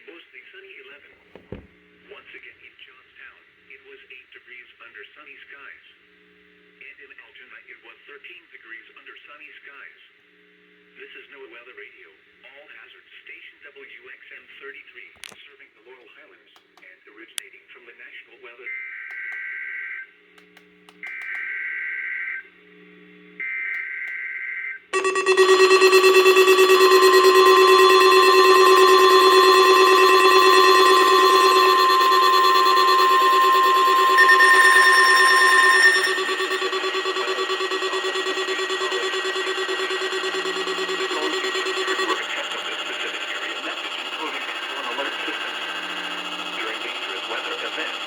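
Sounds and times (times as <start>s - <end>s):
pulsing electronic alarm tone: 25.0s - 48.0s
screechy digital data bursts: 25.0s - 48.0s.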